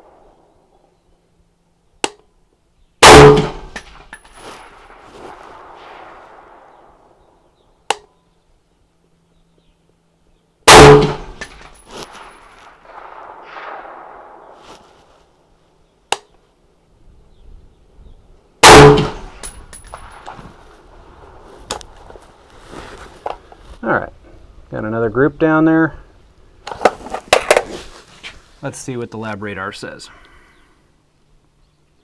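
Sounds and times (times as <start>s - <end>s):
rifle shots with ringing echo: 3.0s - 4.0s, 4.6s - 7.9s, 10.7s - 15.2s, 18.6s - 20.4s.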